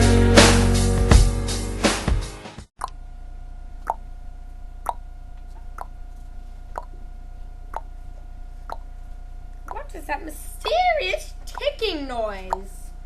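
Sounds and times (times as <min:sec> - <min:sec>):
steady hum: 0:02.8 - 0:13.0.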